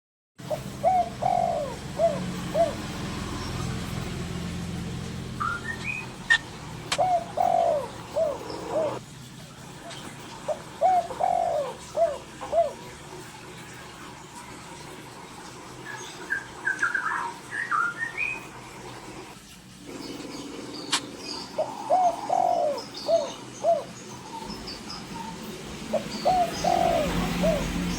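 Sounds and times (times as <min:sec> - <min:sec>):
dove cooing: 0:00.4 - 0:03.9, 0:05.4 - 0:09.0, 0:10.4 - 0:14.1, 0:19.9 - 0:27.9
bird chirps: 0:05.4 - 0:09.0, 0:15.8 - 0:18.5, 0:20.0 - 0:27.9.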